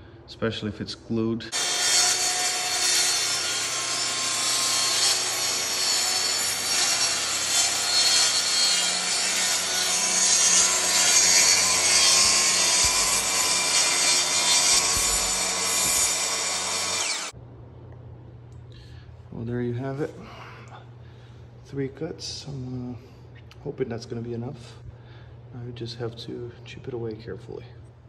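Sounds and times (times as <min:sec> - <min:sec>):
power saw cutting wood: 0:01.5 - 0:17.3.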